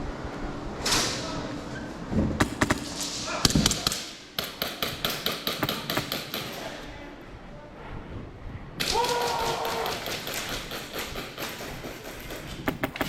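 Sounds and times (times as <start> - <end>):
airsoft gun firing: 8.8 - 13.0.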